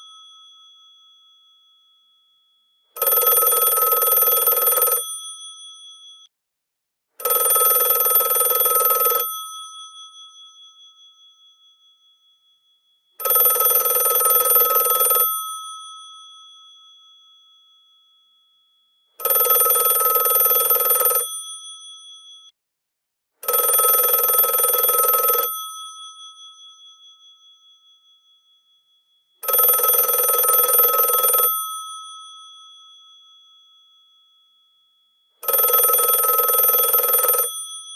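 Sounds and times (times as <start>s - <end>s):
telephone bells ringing: 3.0s - 5.1s, 7.2s - 9.4s, 13.2s - 15.4s, 19.2s - 21.3s, 23.4s - 25.6s, 29.4s - 31.7s, 35.4s - 37.8s.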